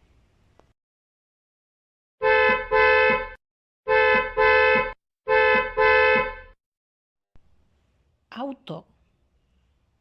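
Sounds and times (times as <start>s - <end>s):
car horn honking: 2.2s - 6.6s.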